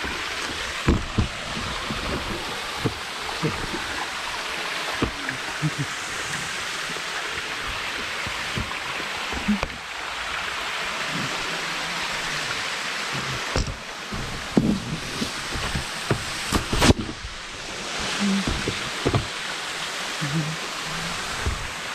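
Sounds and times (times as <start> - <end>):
waterfall rushing: 0.0 - 21.9.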